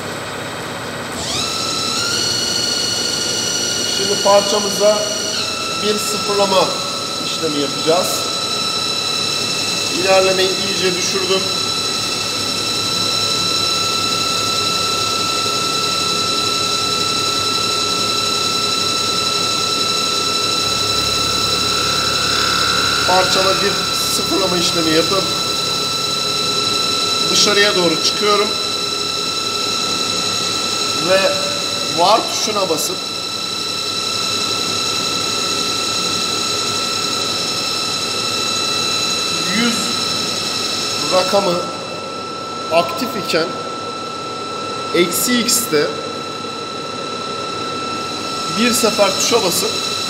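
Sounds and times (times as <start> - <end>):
lathe running with whining tones: 0.0 - 50.0
low hum: 18.6 - 27.4.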